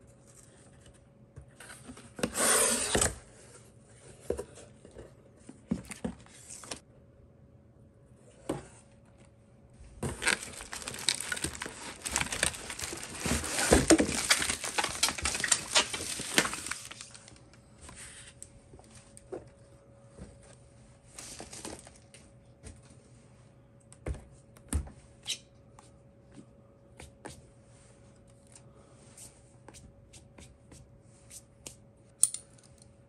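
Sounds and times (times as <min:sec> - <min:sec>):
wrapping crinkling and tearing: 0:09.9 - 0:17.6.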